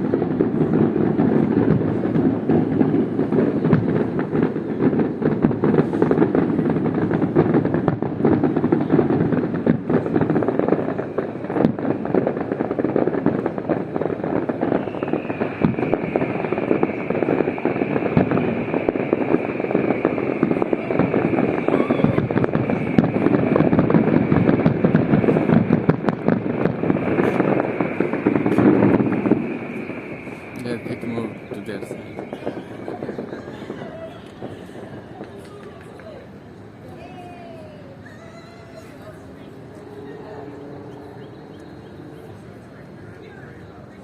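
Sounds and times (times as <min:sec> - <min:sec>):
fireworks crackling pops: 0:00.0 - 0:44.0
steady high whistle: 0:14.6 - 0:23.6, 0:27.3 - 0:36.1.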